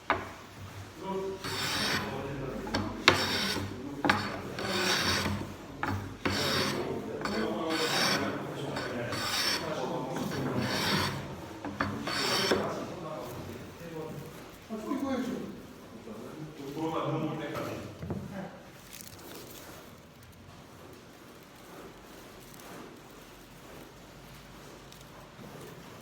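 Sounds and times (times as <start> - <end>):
hand plane shaving wood: 1.3 - 13.0.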